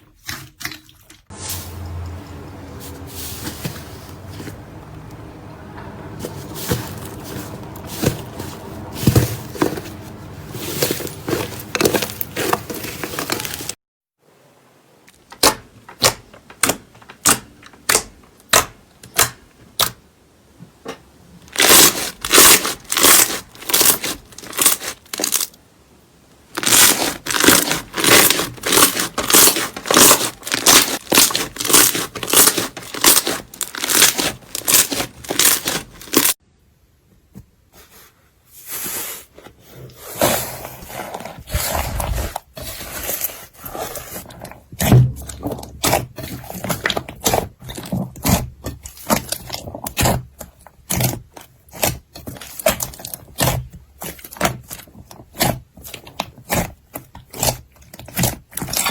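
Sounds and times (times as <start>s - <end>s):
slime crackling and popping: 21.5s - 25.6s, 26.6s - 36.4s, 50.9s - 58.9s.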